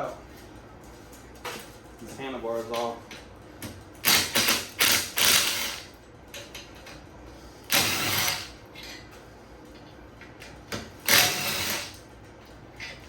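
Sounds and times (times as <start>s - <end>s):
tool loosening bolts: 11.0s - 12.0s.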